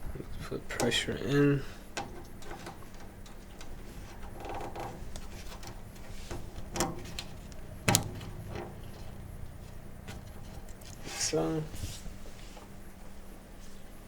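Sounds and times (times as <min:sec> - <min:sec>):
brief rattle: 0:01.7 - 0:13.2
clip snapping into place: 0:02.0 - 0:09.3.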